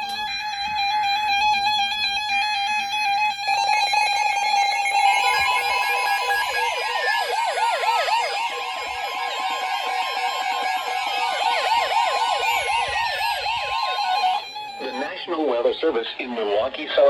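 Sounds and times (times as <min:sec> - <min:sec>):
warbling siren-like alarm: 0:03.2 - 0:16.0
falling whistle-like glide: 0:04.3 - 0:15.2
steady electronic tone: 0:04.7 - 0:16.0.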